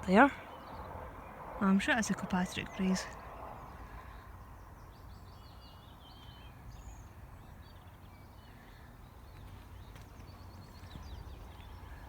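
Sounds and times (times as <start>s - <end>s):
songbirds twittering: 0.0s - 12.0s.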